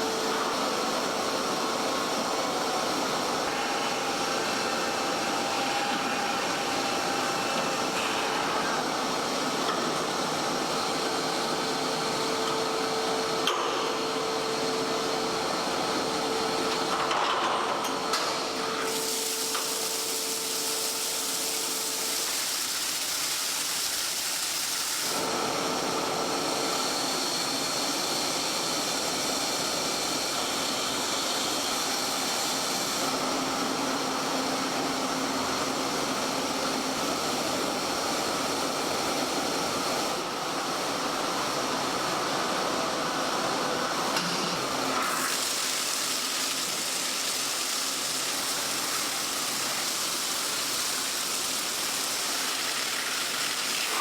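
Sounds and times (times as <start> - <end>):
machinery hiss: 18.4 - 25.2, 43.8 - 54.0.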